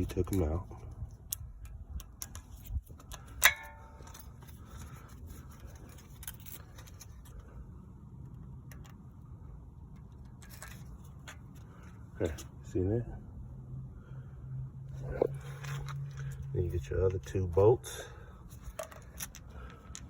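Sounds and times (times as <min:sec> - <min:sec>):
metallic clicks of brake hardware: 0:00.0 - 0:04.9, 0:18.6 - 0:20.0
sharp metal clink: 0:03.4 - 0:04.0.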